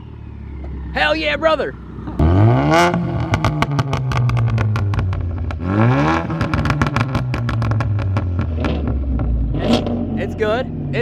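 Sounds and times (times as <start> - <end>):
car engine idling and revving: 0.0 - 11.0.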